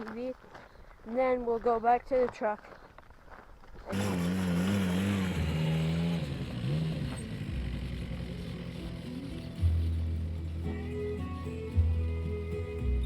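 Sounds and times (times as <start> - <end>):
atv engine revving: 3.9 - 12.0.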